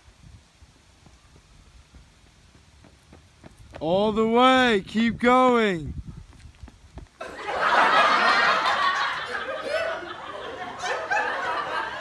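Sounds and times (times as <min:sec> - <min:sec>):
people laughing together: 0:07.2 - 0:12.0.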